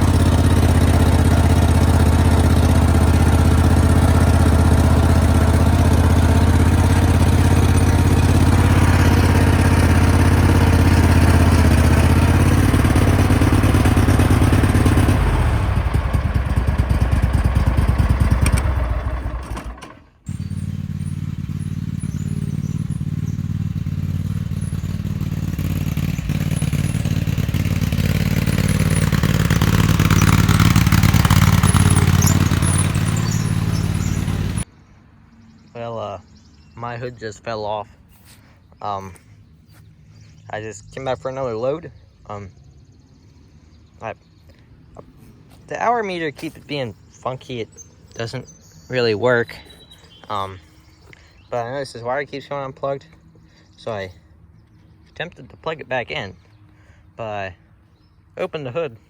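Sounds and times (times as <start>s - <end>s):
garden tractor engine running: 0.0s - 34.7s, 45.0s - 54.1s.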